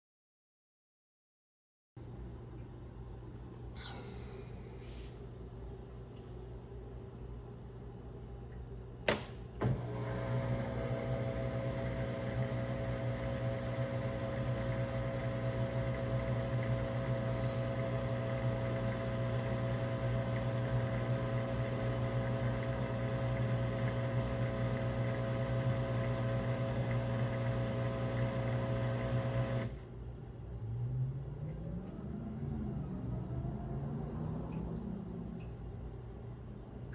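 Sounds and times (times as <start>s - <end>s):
soft hum: 2.0s - 9.0s, 9.8s - 36.9s
washing machine click: 9.0s - 9.8s
washing machine buzzing: 9.1s - 29.8s.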